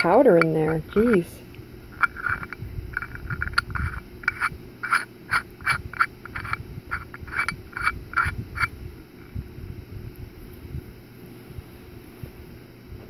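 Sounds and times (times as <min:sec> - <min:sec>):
metal herb grinder scraping: 0:00.0 - 0:08.7.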